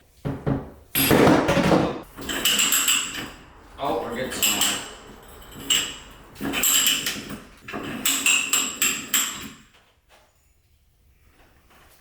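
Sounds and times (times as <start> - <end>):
metal scraping: 2.0 - 9.7
ratchet clicking: 2.2 - 3.4.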